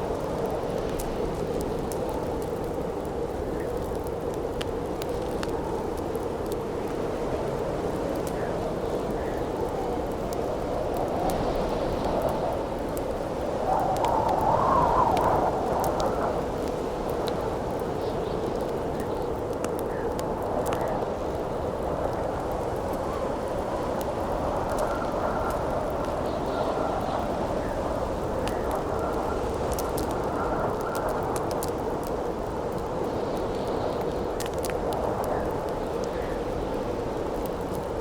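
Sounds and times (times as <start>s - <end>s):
campfire crackling and popping: 0.0s - 38.0s
howling wind: 0.0s - 38.0s.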